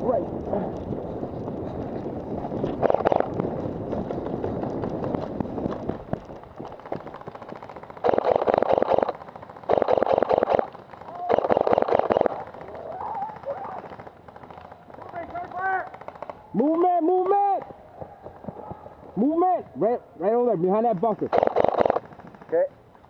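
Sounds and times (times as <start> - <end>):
airsoft gun firing bursts: 2.8 - 3.3, 6.8 - 17.3, 20.8 - 22.6.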